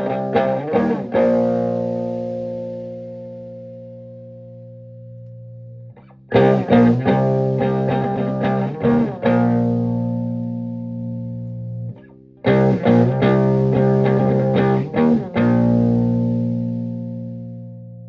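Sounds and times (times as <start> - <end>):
electric guitar strumming chords: 0.0 - 4.8, 6.0 - 18.0.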